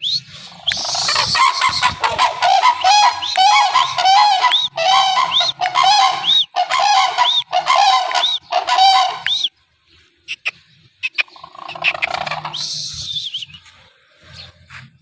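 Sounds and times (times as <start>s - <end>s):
cranes trumpeting calls: 0.3s - 9.5s, 10.3s - 13.1s.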